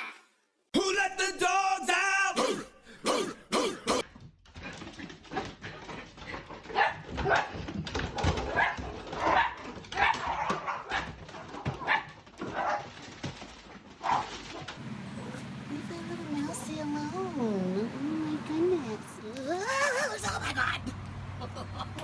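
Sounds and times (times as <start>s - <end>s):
dog barking and yipping: 4.6s - 15.5s.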